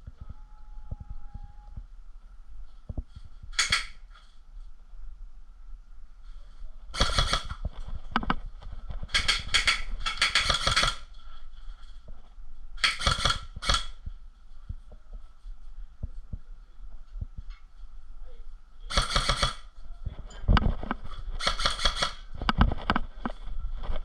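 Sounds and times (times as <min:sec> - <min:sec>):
airsoft guns automatic fire: 0:07.0 - 0:07.6, 0:09.1 - 0:11.1, 0:12.8 - 0:14.0, 0:18.9 - 0:19.6, 0:21.4 - 0:22.2.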